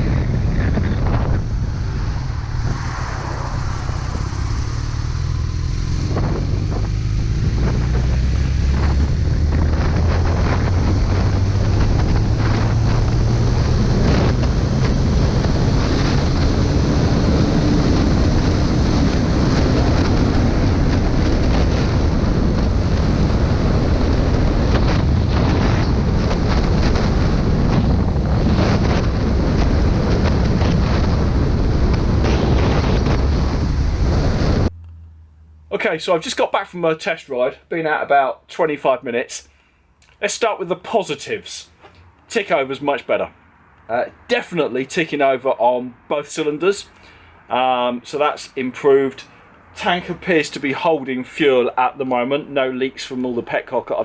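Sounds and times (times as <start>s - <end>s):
motorcycle engine accelerating: 0.0s - 35.2s
wind noise on microphone: 0.0s - 35.5s.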